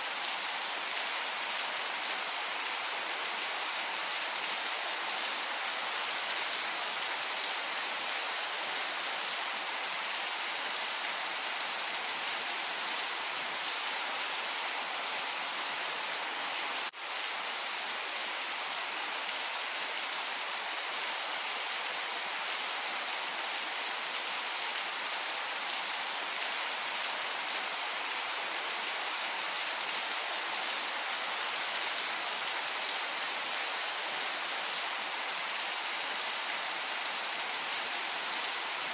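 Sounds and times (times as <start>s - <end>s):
steady rain hiss: 0.0s - 38.9s.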